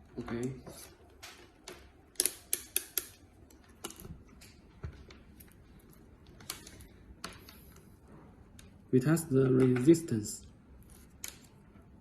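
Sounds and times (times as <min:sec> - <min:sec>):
small tools clicking and tapping: 0:00.2 - 0:05.6.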